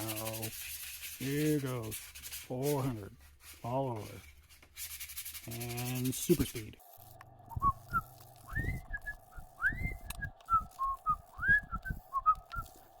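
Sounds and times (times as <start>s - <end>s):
faint steady hum: 6.2s - 13.0s
person whistling: 7.5s - 12.8s.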